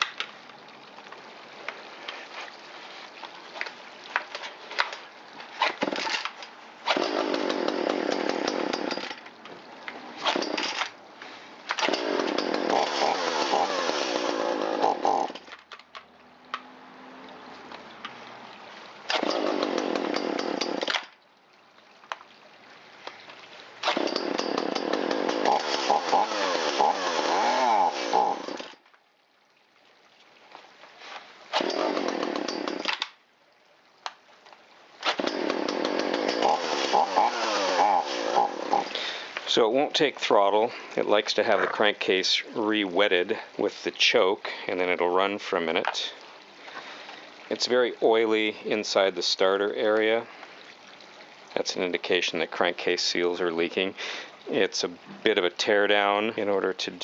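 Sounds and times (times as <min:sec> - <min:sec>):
chainsaw engine sputtering: 0:06.9 - 0:09.2, 0:11.8 - 0:15.4, 0:19.1 - 0:21.0, 0:23.8 - 0:28.8, 0:31.6 - 0:33.0, 0:35.1 - 0:39.2.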